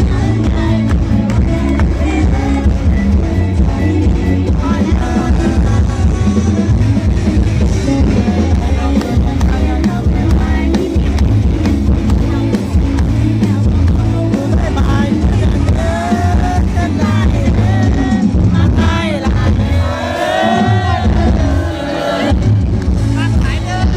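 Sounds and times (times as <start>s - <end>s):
bass: 0.0s - 23.9s
drum kit beat: 0.0s - 23.9s
guitar: 0.0s - 23.9s
live band music: 0.0s - 23.9s.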